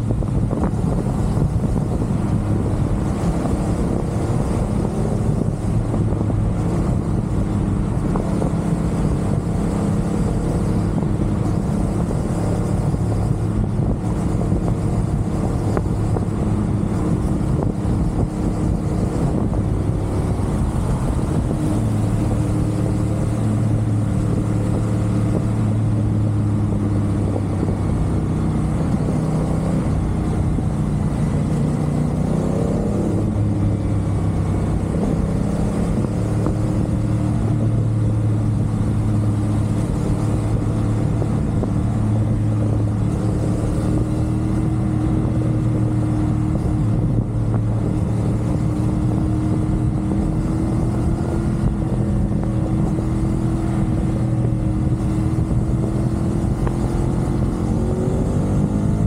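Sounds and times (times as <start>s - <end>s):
motorcycle engine cruising: 0.0s - 59.0s
wind and road rush: 0.0s - 59.0s.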